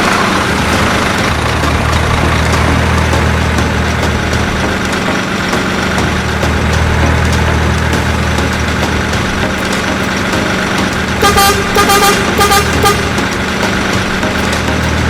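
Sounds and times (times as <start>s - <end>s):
truck engine idling: 0.0s - 15.0s
truck horn short toots: 11.2s - 13.3s.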